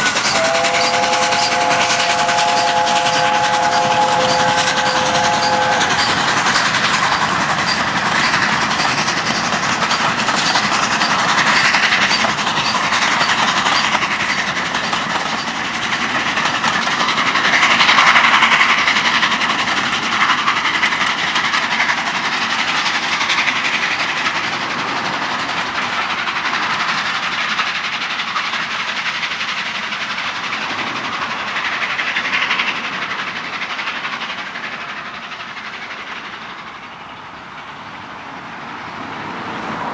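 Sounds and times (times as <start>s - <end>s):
steam locomotive whistle: 0.0s - 7.8s
train rushing past: 0.0s - 39.9s.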